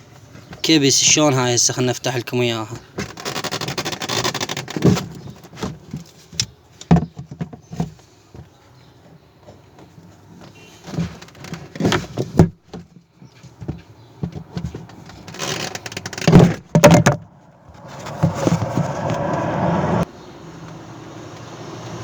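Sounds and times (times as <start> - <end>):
steady rushing noise: 17.4 - 20.1.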